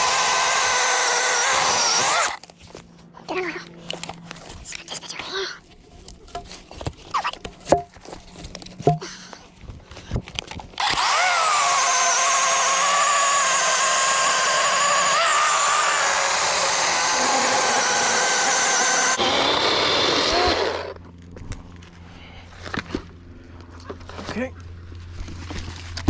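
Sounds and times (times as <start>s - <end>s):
electric chainsaw cutting log: 0.0s - 2.4s, 10.8s - 21.1s.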